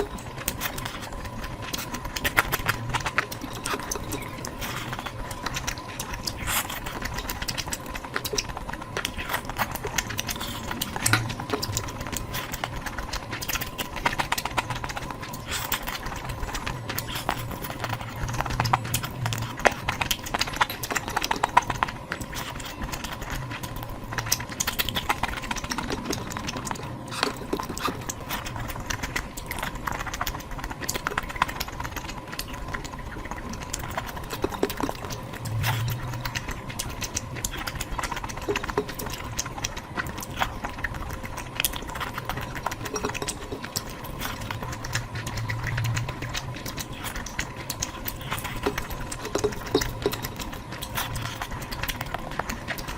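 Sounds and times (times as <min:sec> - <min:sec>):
chewing and mouth smacking: 0:00.0 - 0:52.9.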